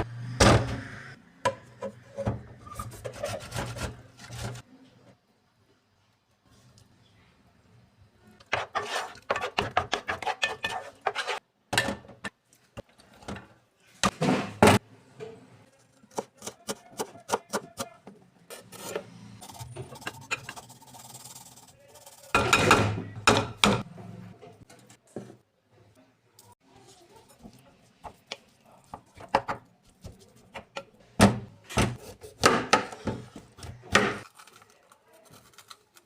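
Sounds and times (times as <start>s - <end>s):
utensil scraping and knocking on board: 8.5s - 11.4s.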